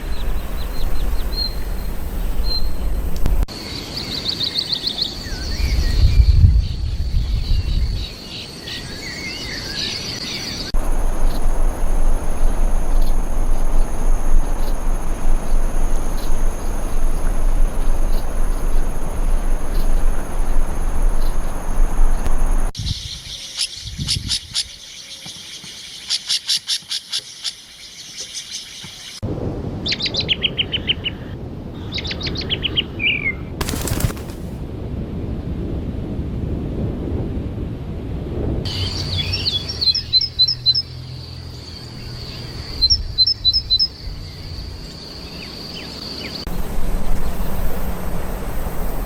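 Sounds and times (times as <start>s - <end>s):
birds chirping and trilling: 0.0s - 11.6s, 38.7s - 46.5s
steady hiss: 10.8s - 22.7s, 46.4s - 49.0s.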